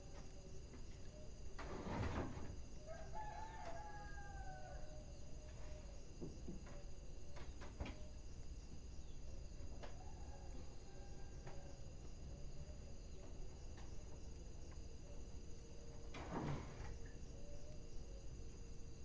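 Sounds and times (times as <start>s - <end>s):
rooster crowing: 2.8s - 5.2s, 9.8s - 11.8s.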